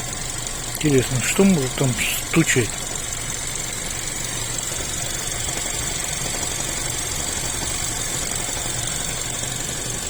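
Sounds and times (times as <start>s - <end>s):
car engine running with knock: 2.5s - 10.0s.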